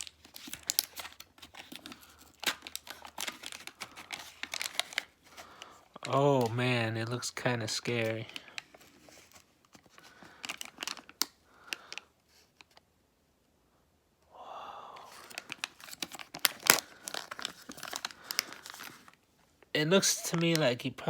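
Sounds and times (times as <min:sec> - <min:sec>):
foil lid crinkling and tearing: 0:00.0 - 0:12.1, 0:15.0 - 0:19.2, 0:20.0 - 0:20.8.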